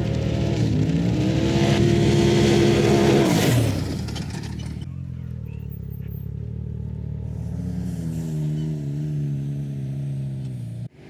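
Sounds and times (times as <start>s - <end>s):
utility vehicle engine running: 0.0s - 11.0s.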